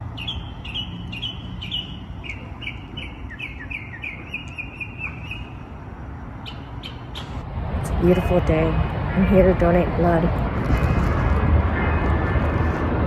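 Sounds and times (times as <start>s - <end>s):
bird chirping and trilling: 0.0s - 5.7s, 6.4s - 7.4s.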